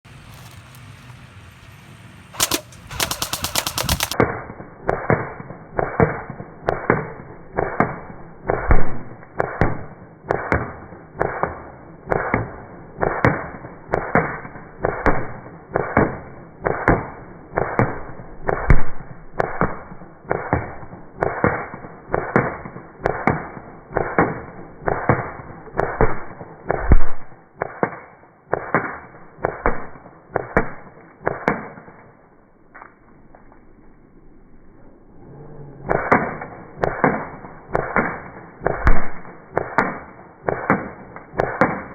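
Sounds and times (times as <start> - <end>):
rattle of clicks: 2.4 - 4.2.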